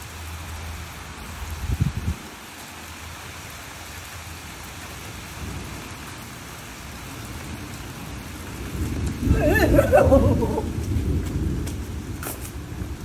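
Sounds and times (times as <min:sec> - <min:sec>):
steady rain falling: 0:00.0 - 0:13.0
low rolling thunder: 0:07.1 - 0:13.0.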